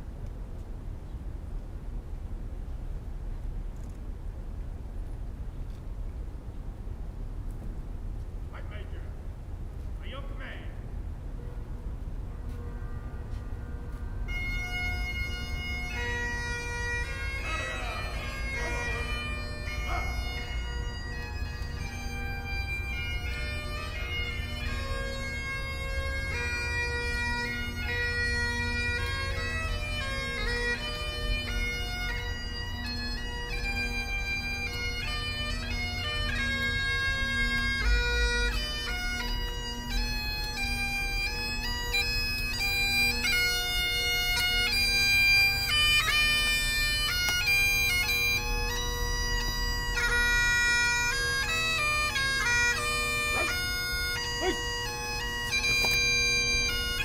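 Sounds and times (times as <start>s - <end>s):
bagpipes playing a melody: 11.8s - 57.0s.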